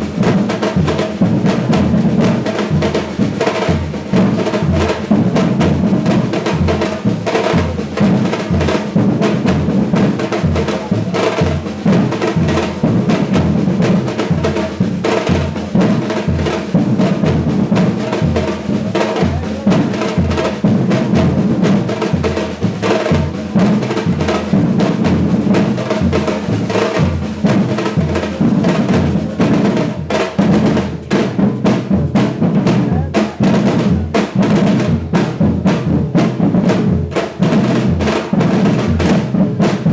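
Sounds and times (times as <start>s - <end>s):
percussion ensemble samba rhythm: 0.0s - 39.9s
snare drums: 0.0s - 39.9s
deep bass drums: 20.6s - 39.9s.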